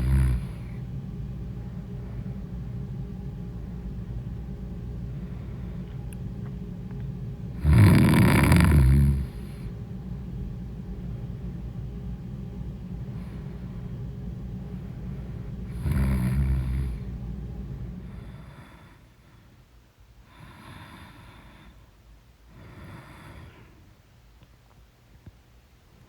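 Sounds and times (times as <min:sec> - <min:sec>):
person snoring: 0:00.0 - 0:00.8, 0:07.6 - 0:09.7, 0:15.7 - 0:17.1
soft breaths: 0:05.0 - 0:06.2, 0:13.0 - 0:14.0, 0:17.9 - 0:25.3
loud snort: 0:07.6 - 0:09.6, 0:15.7 - 0:17.0.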